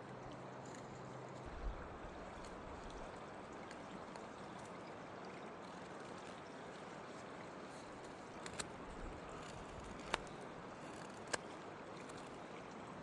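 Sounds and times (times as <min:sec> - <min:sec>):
river flowing: 0:00.0 - 0:13.0.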